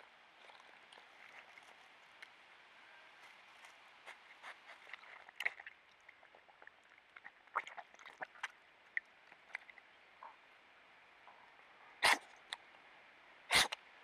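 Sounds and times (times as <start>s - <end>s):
badger foraging clicks and sniffs: 12.0s - 12.6s, 13.5s - 13.8s.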